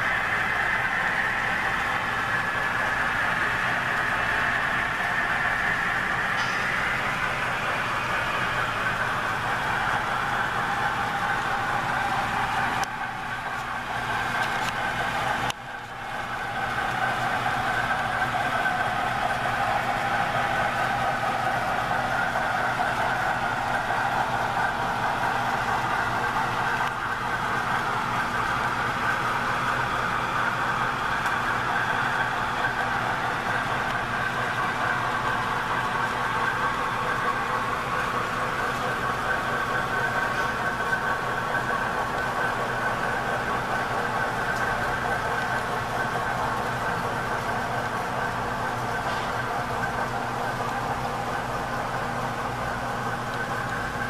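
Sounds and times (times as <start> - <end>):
model train electric motor hum: 0.0 - 54.0
wheels rumbling on rails: 0.0 - 54.0.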